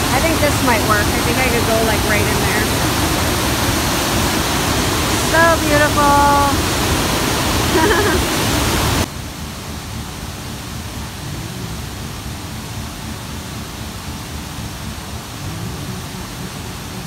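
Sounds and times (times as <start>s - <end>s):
waterfall rushing: 0.0s - 9.1s, 10.6s - 17.0s
low rumble: 8.3s - 17.0s.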